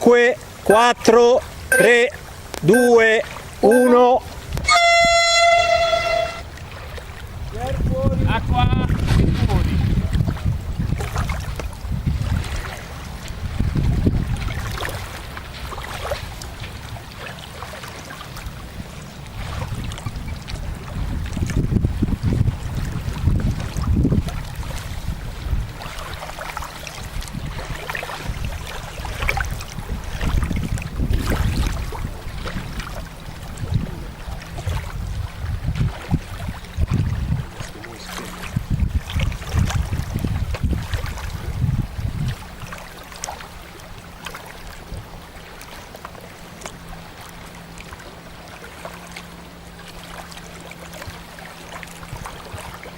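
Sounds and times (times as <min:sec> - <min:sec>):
water splashing: 0:00.0 - 0:52.9
wind buffeting microphone: 0:04.3 - 0:17.2, 0:18.4 - 0:45.5, 0:51.0 - 0:52.9.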